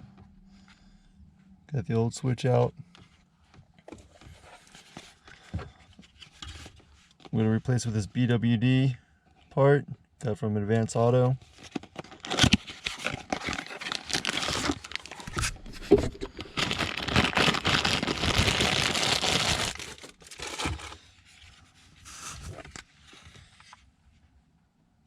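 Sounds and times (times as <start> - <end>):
packaging crinkling and tearing: 11.5 - 21.0.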